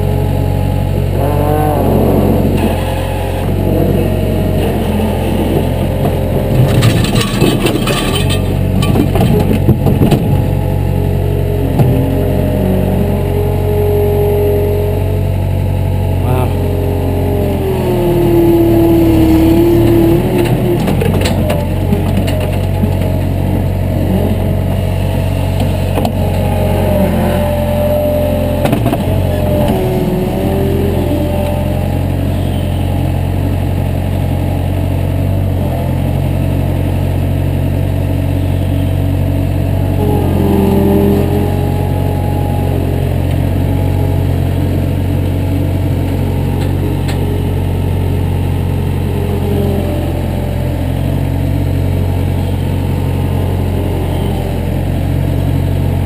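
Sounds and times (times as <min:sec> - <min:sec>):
higher wavering tones: 0:00.0 - 0:06.4, 0:39.9 - 0:48.2
engine droning: 0:00.0 - 0:56.0.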